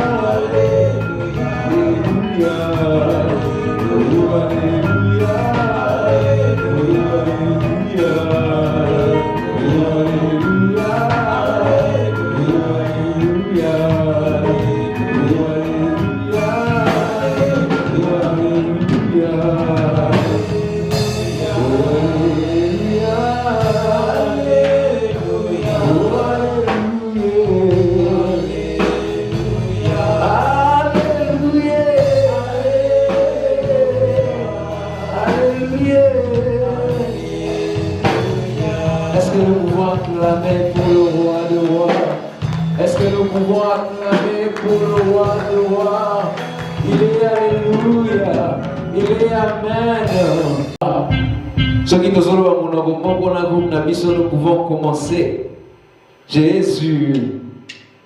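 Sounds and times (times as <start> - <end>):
full band playing: 0.0 - 58.0
gospel voices singing: 0.0 - 58.0
drum hits: 16.4 - 52.5.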